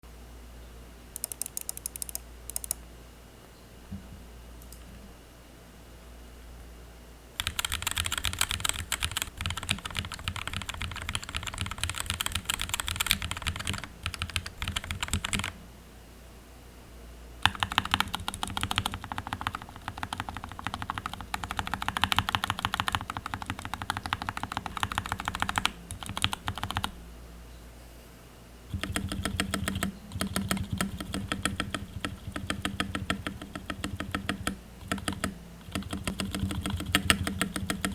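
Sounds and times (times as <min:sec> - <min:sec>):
mechanical keyboard typing: 0:01.2 - 0:02.8, 0:07.4 - 0:15.6, 0:17.4 - 0:26.9, 0:28.7 - 0:37.9.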